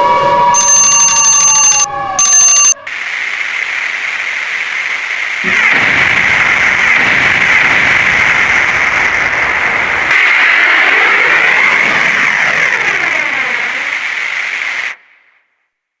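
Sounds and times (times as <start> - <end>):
loud hissing static: 2.8 - 15.4.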